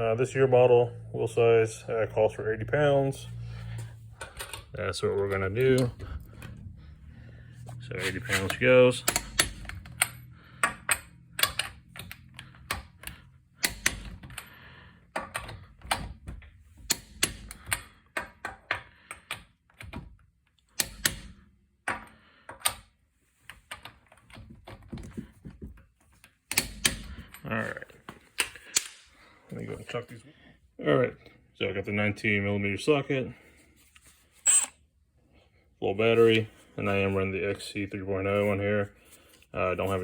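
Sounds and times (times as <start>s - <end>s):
metallic clicks of hand tools: 8.3s - 14.4s, 28.4s - 29.1s.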